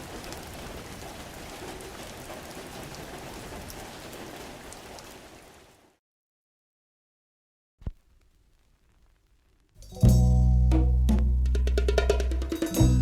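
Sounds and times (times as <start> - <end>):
fire crackling and popping: 7.8 - 9.8.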